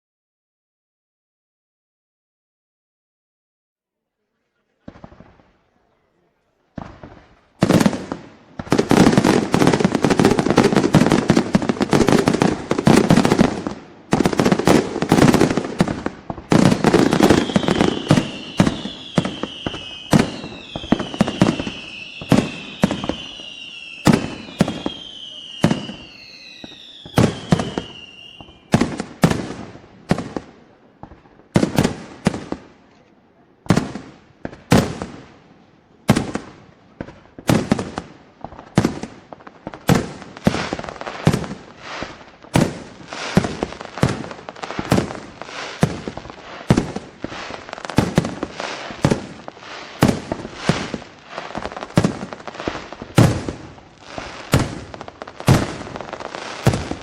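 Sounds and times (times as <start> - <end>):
falling firework whistle: 16.5 - 29.0
firework shells bursting: 37.0 - 57.0.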